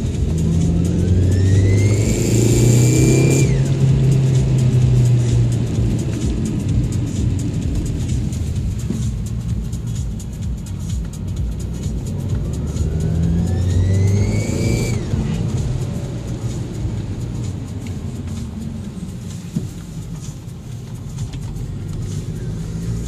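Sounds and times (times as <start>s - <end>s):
turbocharger whine: 0.0s - 8.3s, 12.2s - 19.2s
car engine accelerating: 0.0s - 23.0s.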